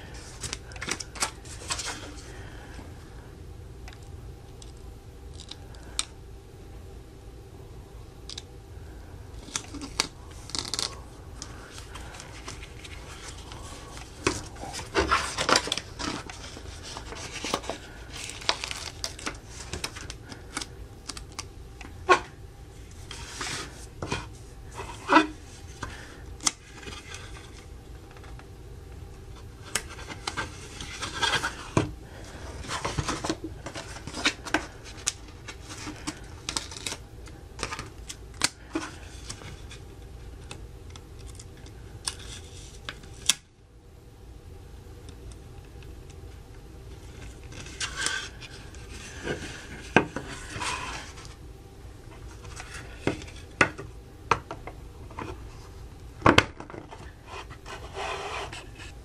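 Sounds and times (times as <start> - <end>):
scraping and rustling: 9.4 - 21.4, 22.0 - 28.4, 29.4 - 37.0, 47.0 - 51.4.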